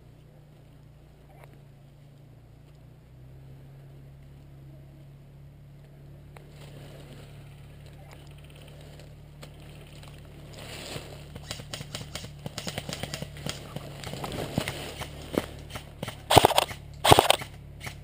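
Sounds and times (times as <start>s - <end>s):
quiet outdoor hum: 0.0s - 18.0s
leaves and twigs crunching underfoot: 5.7s - 16.9s.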